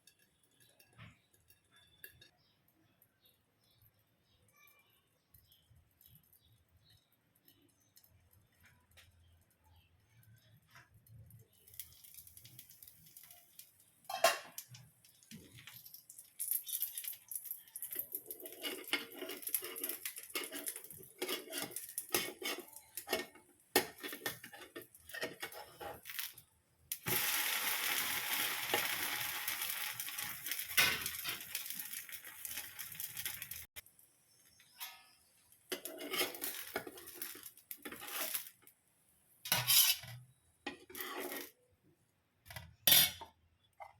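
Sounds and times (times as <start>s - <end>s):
metal utensils scraping cookware: 14.1s - 14.8s, 16.4s - 26.4s, 28.7s - 33.6s, 34.6s - 38.6s, 39.5s - 41.6s, 42.6s - 43.9s.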